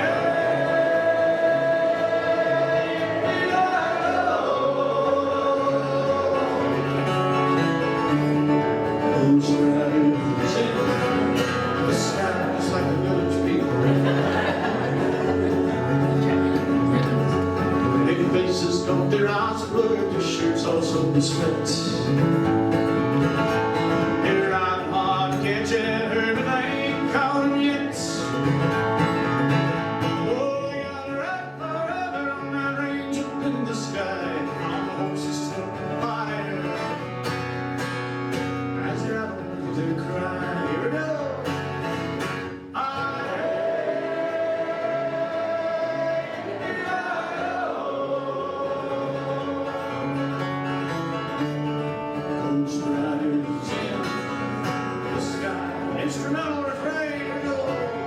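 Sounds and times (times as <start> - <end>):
person singing: 0.0 - 7.2, 8.9 - 22.4, 24.2 - 28.3, 42.8 - 50.2, 52.2 - 58.0
acoustic guitar: 0.0 - 58.0.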